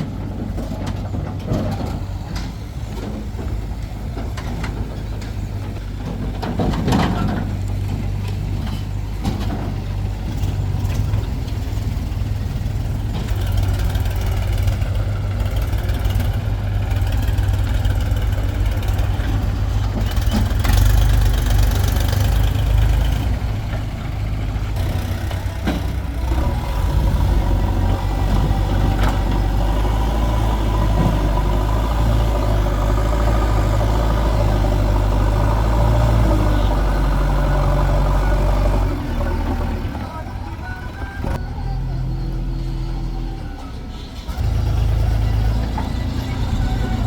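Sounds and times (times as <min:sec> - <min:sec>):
diesel engine running: 0:00.0 - 0:47.0.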